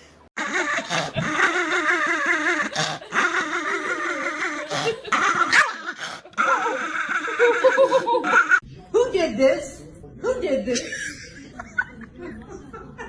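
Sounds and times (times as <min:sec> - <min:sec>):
dog warbling growl-whine: 0:00.4 - 0:08.6.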